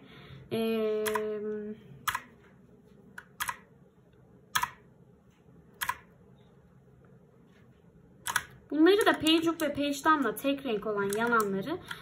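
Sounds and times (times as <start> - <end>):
clicky keyboard key presses: 1.0 - 1.3, 2.0 - 2.3, 3.1 - 3.7, 4.5 - 4.8, 5.8 - 6.1, 8.2 - 9.8, 10.8 - 12.0.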